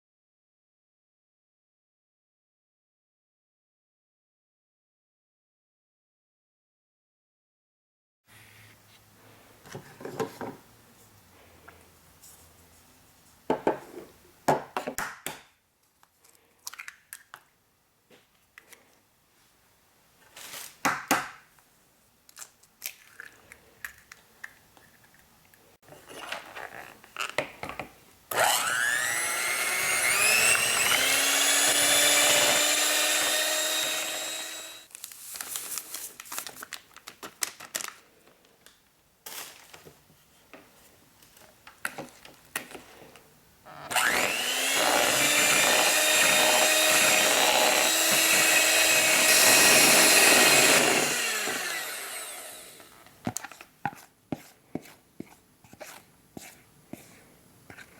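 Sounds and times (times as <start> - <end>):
hand mixer motor whine: 28.3 - 34.9, 43.7 - 53.0.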